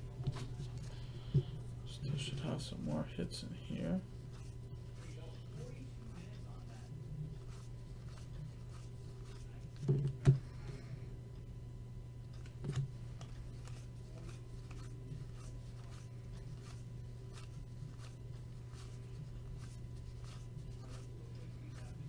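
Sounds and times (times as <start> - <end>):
steady low hum: 0.0 - 22.0
trading cards sliding: 13.2 - 22.0.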